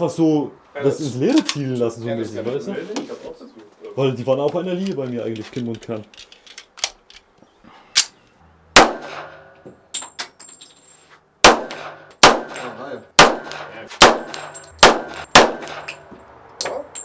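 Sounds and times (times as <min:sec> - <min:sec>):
pistol shots echoing: 0:08.8 - 0:09.5, 0:11.4 - 0:16.0
metallic tinkle: 0:14.4 - 0:14.8.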